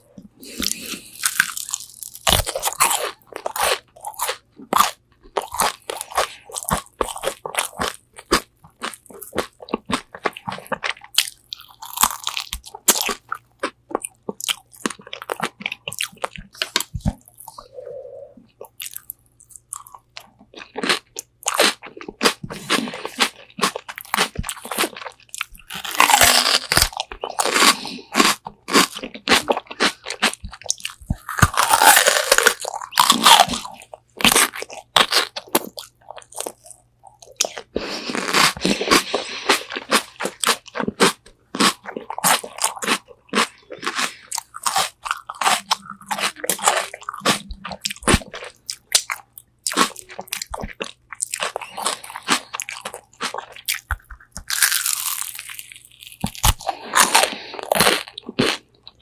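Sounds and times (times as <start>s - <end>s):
crunching fried chicken: 0.1s - 17.6s, 18.6s - 59.0s
chewing: 18.4s - 59.0s.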